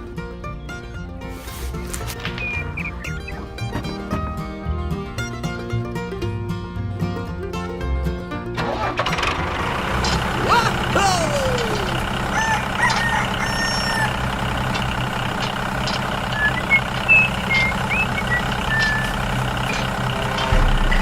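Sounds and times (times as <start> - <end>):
tractor engine humming: 0.0 - 21.0
high chirps and whistles: 16.2 - 20.0.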